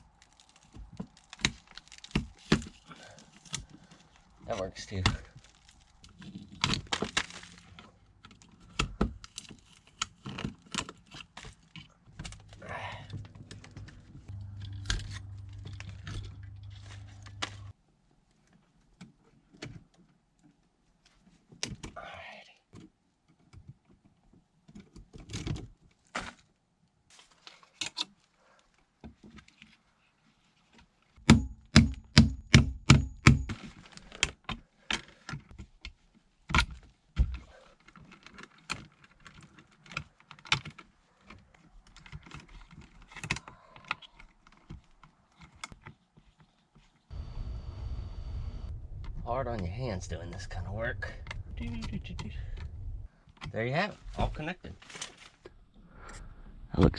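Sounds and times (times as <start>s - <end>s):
steady low hum: 12.4s - 17.7s, 47.1s - 53.4s
clicks and taps on electrical wiring: 30.7s - 46.9s.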